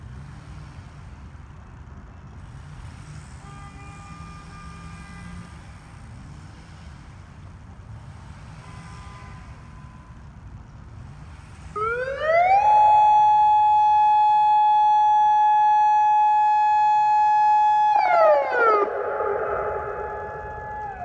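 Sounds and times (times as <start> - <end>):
low outdoor rumble: 18.5 - 21.0
faint held tone: 18.9 - 21.0.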